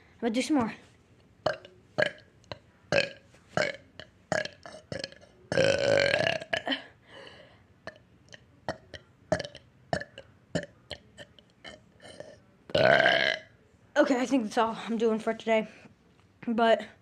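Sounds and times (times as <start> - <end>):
person burping: 1.4 - 2.2, 2.9 - 6.9, 8.7 - 13.5.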